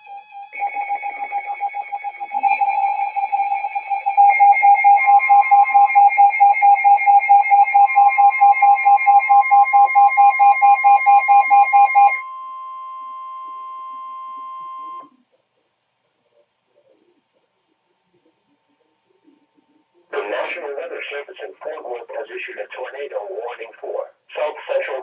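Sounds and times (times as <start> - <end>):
rapid beeping alarm: 0.0 - 15.0
steady warning tone: 0.0 - 15.1.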